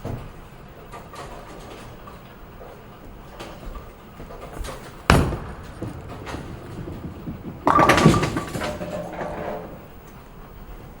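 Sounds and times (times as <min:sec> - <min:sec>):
bowling ball rolling rumble: 0:01.1 - 0:11.0
bowling ball thud: 0:03.4 - 0:10.0
pins crashing and clattering: 0:04.6 - 0:10.0.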